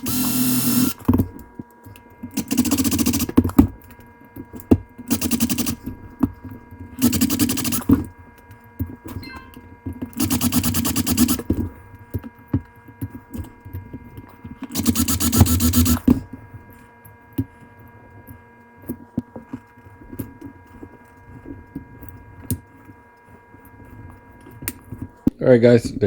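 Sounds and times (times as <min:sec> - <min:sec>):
power drill drilling metal: 0:00.0 - 0:01.1, 0:02.4 - 0:03.4, 0:07.0 - 0:07.9, 0:10.2 - 0:11.5, 0:14.8 - 0:16.1.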